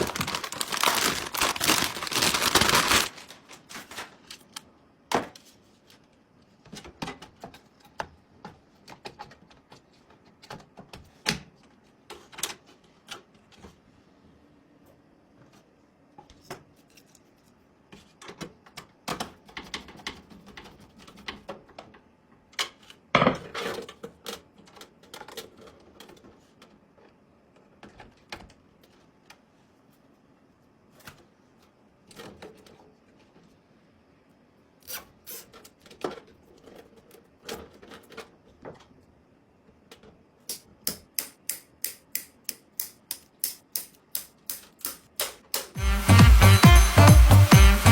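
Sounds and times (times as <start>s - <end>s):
small hard objects clattering: 0.0s - 4.3s.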